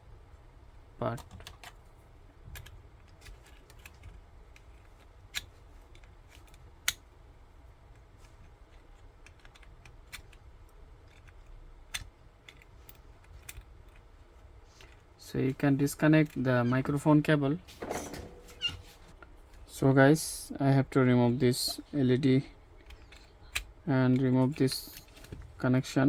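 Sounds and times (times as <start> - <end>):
clicks of small plastic parts: 8.2 - 14.1.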